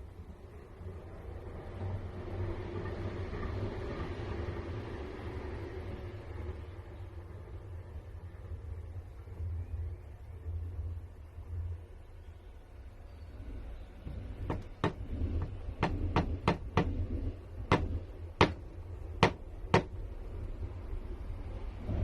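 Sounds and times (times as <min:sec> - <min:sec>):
low steady rumble: 0:04.7 - 0:22.0
sharp taps: 0:14.4 - 0:17.1, 0:17.7 - 0:18.6, 0:19.2 - 0:19.9.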